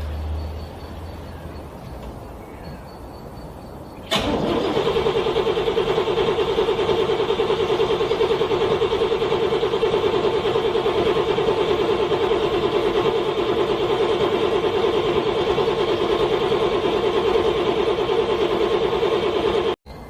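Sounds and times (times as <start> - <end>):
car engine cranking: 4.0 - 19.8.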